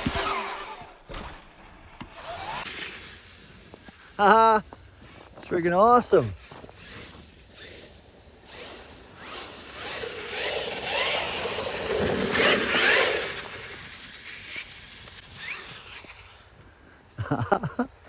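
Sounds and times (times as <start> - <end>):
tyres scraping frozen ground: 0.0 - 18.0
electric motor whining: 6.4 - 16.6.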